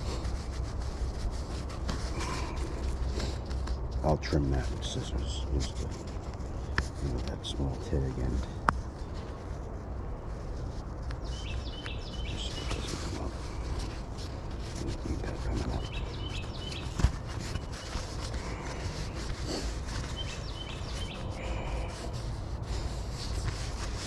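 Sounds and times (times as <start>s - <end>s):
hands rubbing fabric: 0.0s - 24.0s
bird chirping: 11.2s - 13.9s, 15.0s - 22.2s.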